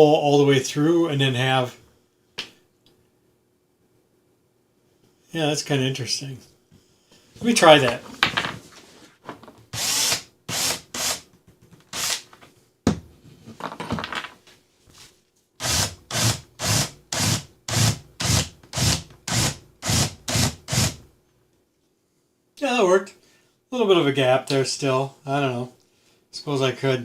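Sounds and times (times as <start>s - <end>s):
power drill bursts: 9.8s - 11.2s, 11.9s - 12.3s, 15.6s - 21.0s.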